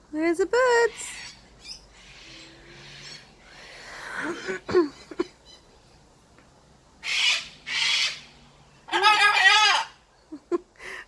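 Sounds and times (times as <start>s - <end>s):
macaw harsh squawks: 0.9s - 3.3s, 7.0s - 8.3s, 8.9s - 10.0s.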